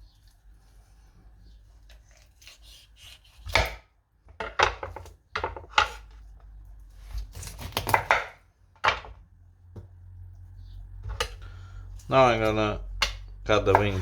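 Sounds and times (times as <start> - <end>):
knife cutting raw chicken: 0.2 - 3.9, 6.8 - 8.4, 12.4 - 14.0.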